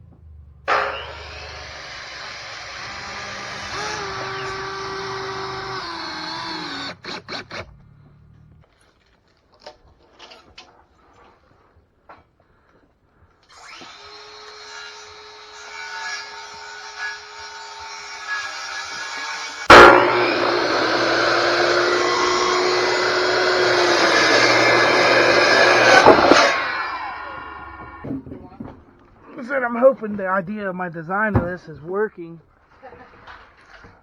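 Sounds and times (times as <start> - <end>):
power tool motor whining: 0.7 - 7.8, 16.6 - 28.0
sharp knocks: 19.7 - 28.9.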